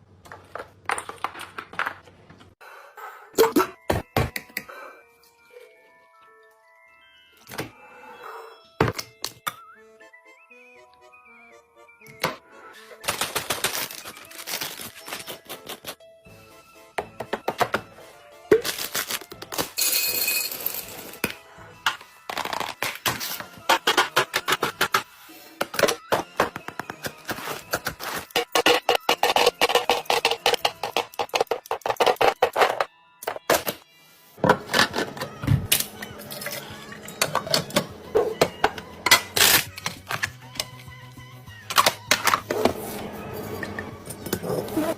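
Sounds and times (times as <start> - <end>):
items clattering in a fridge: 0.0 - 2.6, 12.1 - 16.0, 18.5 - 33.8, 34.4 - 40.8, 41.6 - 44.9
soft background music: 2.7 - 44.9.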